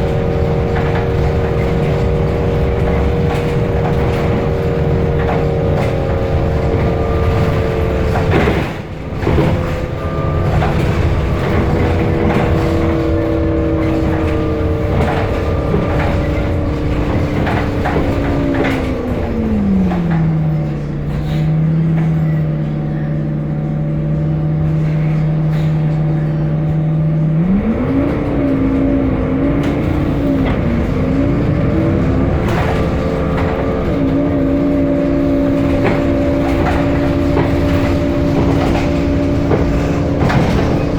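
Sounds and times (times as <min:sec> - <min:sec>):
bus diesel engine droning: 0:00.0 - 0:40.9.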